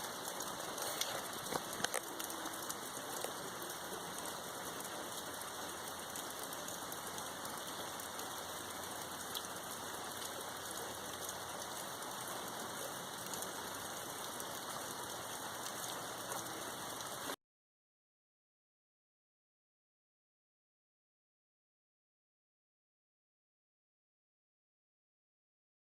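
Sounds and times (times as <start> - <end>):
rain pattering: 0.0 - 17.4.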